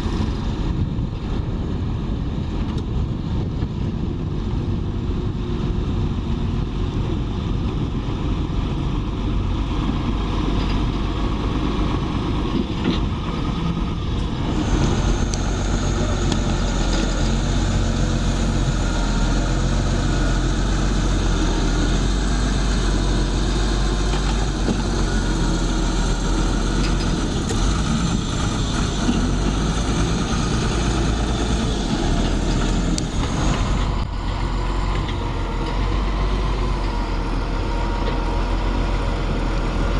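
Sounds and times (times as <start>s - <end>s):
heavy machinery engines running: 0.0s - 39.9s.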